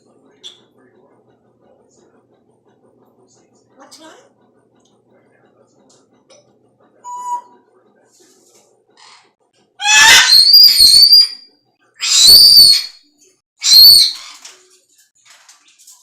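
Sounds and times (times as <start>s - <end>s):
parrot calling: 9.8s - 11.4s, 12.0s - 13.0s, 13.6s - 14.4s.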